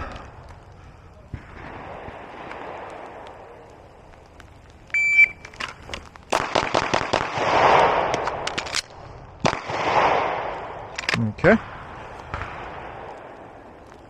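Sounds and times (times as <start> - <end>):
pistol shots: 6.3 - 10.4.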